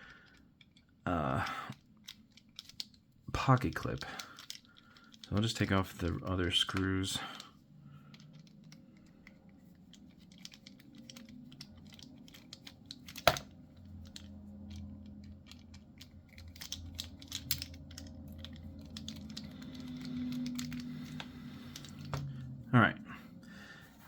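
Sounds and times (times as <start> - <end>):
screwdriver clicks and taps: 13.0 - 13.5, 20.4 - 22.3.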